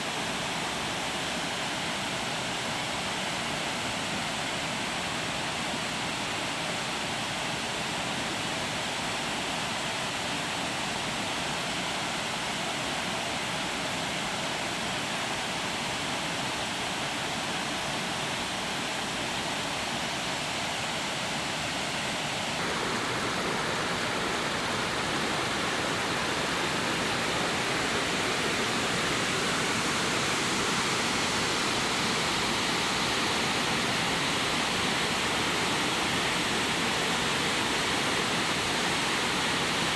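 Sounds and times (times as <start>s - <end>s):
heavy rain pouring: 22.6s - 39.9s.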